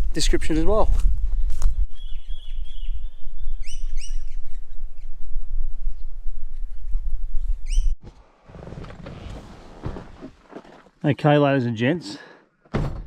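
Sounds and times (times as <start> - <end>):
bird whistling and chirping: 1.9 - 5.1, 7.4 - 8.0.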